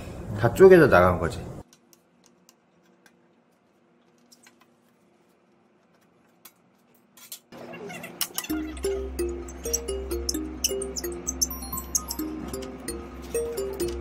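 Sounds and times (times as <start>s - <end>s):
background music: 8.5s - 14.0s.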